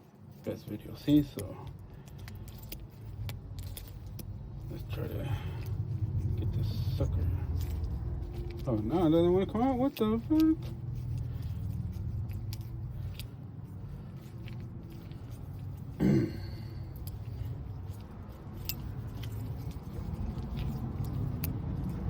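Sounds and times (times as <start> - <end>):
low steady hum: 0.0 - 22.0
key clicking and scraping in lock: 1.0 - 8.9, 9.8 - 16.0, 16.8 - 22.0
person grunting: 16.0 - 16.7.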